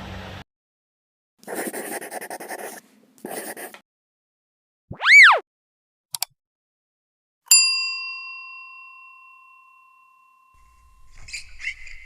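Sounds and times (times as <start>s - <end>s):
quick clicks: 6.1s - 6.3s
bell ding ringing: 7.5s - 10.7s.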